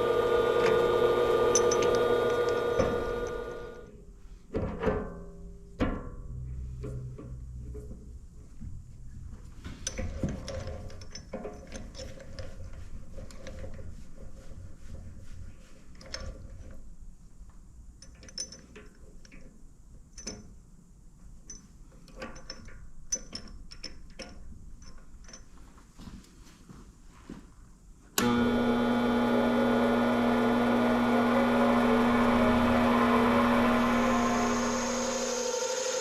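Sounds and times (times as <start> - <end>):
metal parts clicking: 18.0 - 19.4.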